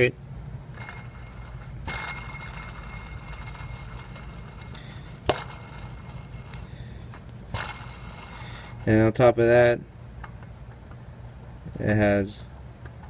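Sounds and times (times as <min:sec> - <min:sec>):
bearing thin steady tone: 0:00.6 - 0:09.4.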